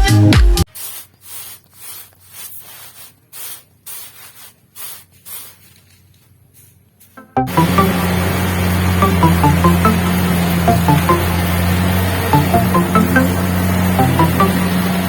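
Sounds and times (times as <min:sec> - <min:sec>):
music: 0:00.0 - 0:00.6, 0:07.2 - 0:15.0
dry stalks swishing and rustling: 0:00.7 - 0:07.2.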